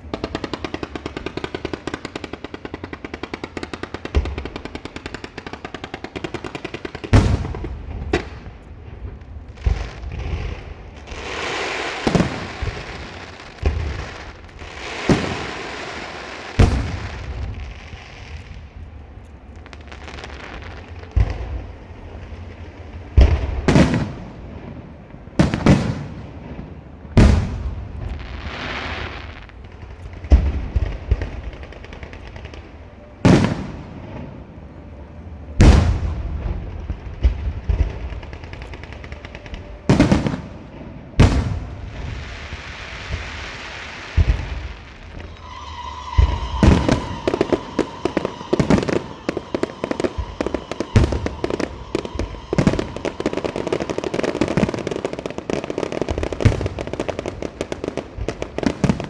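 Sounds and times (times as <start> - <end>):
firecracker string crackling: 0.0 - 59.0
loud firecracker bangs: 7.0 - 8.7, 9.6 - 17.6, 27.1 - 29.2, 35.6 - 43.3, 44.1 - 59.0.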